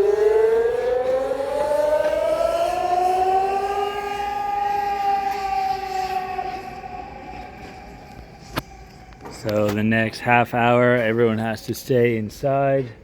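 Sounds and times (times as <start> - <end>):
lower siren: 0.0 - 9.8
air raid siren wailing: 0.0 - 10.8.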